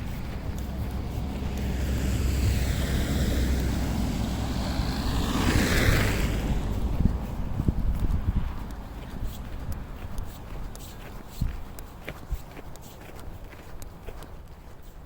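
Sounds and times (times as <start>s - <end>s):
vehicle driving past: 0.0s - 9.7s
wind on microphone: 0.0s - 12.6s.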